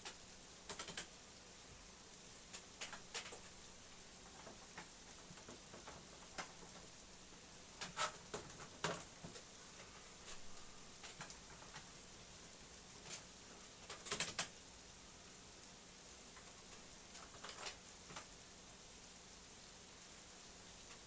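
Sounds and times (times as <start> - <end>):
sparse keyboard keystrokes: 0.0 - 1.1, 2.5 - 3.5, 13.8 - 14.5, 17.2 - 18.3.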